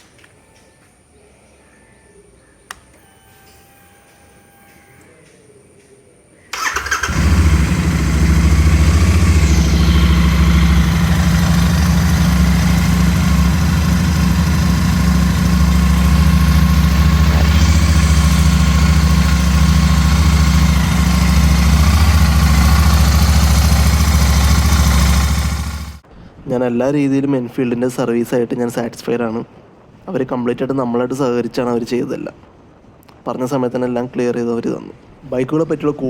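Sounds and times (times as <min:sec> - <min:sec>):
motorcycle engine starting and idling: 0:06.5 - 0:26.0.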